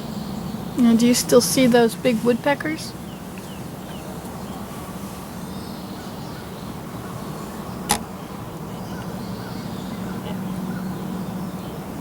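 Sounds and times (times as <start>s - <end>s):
faint bird calls: 0.0s - 12.0s
steady low hum: 0.0s - 12.0s.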